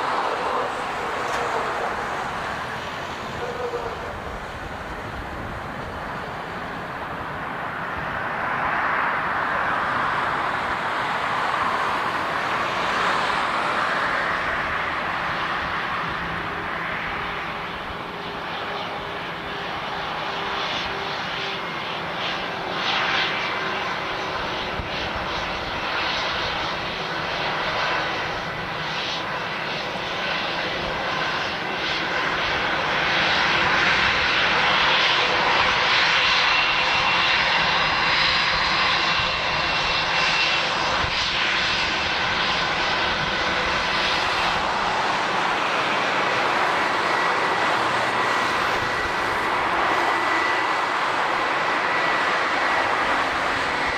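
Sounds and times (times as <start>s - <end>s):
airliner engines running: 0.0s - 53.9s.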